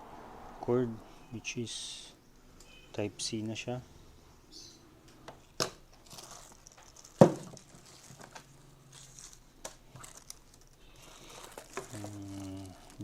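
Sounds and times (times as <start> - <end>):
plastic packaging crinkling: 5.9 - 13.0.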